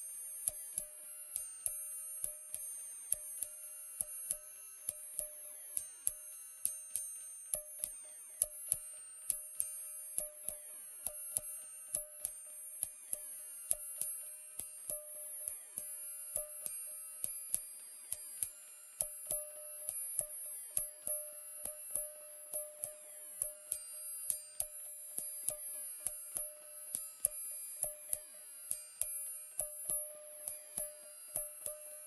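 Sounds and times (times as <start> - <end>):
piercing electronic whistle tone: 0.0 - 32.0.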